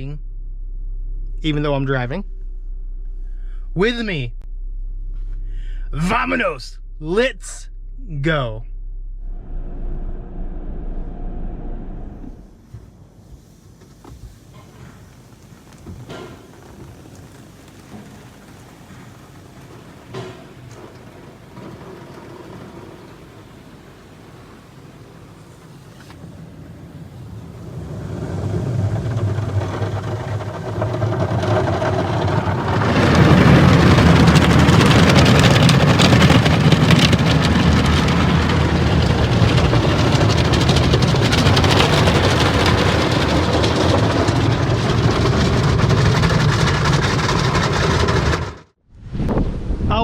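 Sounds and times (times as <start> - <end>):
car engine: 0.0 - 12.7, 26.8 - 48.8
road and wind noise: 9.0 - 13.2, 22.8 - 49.9.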